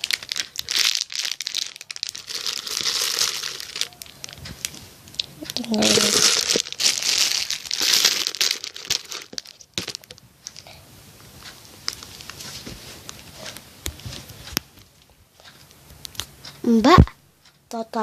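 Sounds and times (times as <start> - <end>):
packaging crinkling: 0.0 - 10.7.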